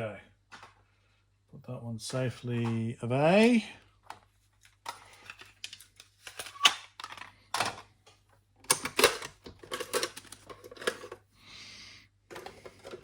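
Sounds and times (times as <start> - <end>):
plastic cassette cases clacking: 4.1 - 7.9, 8.6 - 11.2.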